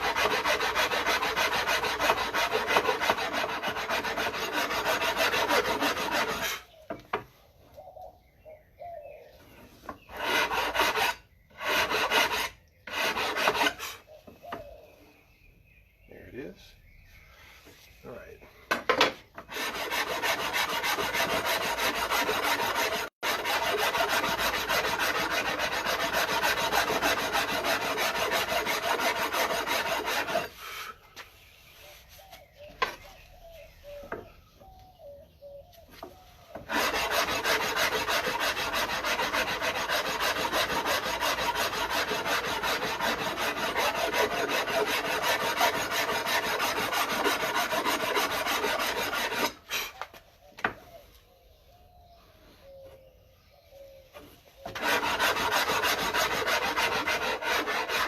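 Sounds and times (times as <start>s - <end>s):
hand rasp filing wood: 0.0s - 6.7s, 10.1s - 14.0s, 19.4s - 31.0s, 36.6s - 50.0s, 54.7s - 58.0s.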